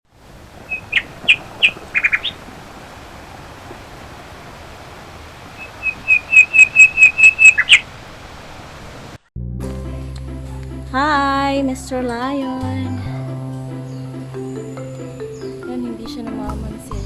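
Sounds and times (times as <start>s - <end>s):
bird chirping: 0.4s - 3.9s, 5.4s - 7.9s, 13.8s - 15.7s.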